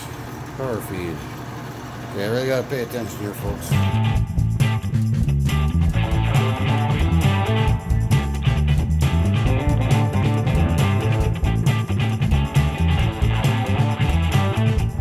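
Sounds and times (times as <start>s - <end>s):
rock music with guitar and bass: 3.6s - 15.0s.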